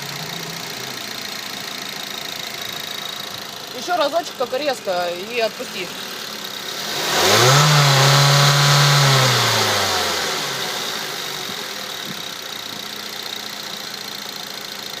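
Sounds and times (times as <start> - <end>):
car engine idling: 0.0 - 15.0
faint engine ticks: 11.4 - 15.0.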